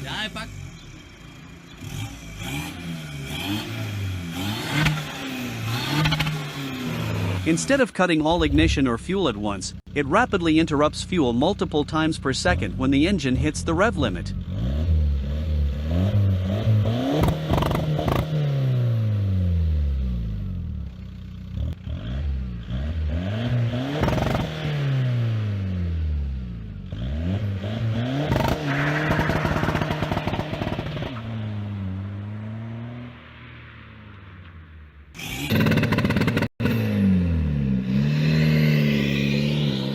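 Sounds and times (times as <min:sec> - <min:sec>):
car engine revving: 0:00.0 - 0:10.9, 0:11.7 - 0:39.9
rev limiter popping: 0:27.6 - 0:33.1.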